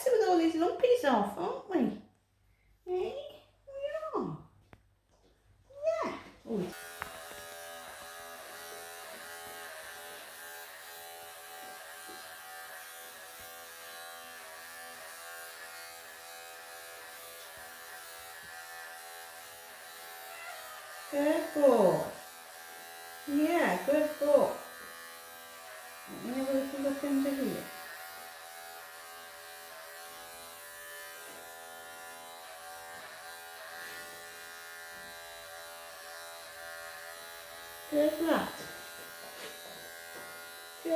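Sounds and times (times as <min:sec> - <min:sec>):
electric pet clippers buzzing: 0:06.4 - 0:40.9.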